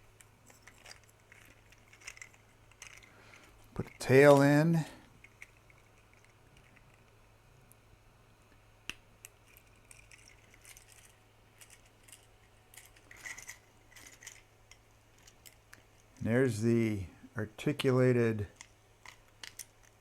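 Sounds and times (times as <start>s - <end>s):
low steady hum: 0.0s - 20.0s
plastic parts clicking: 0.2s - 4.5s, 8.9s - 16.1s, 18.5s - 20.0s.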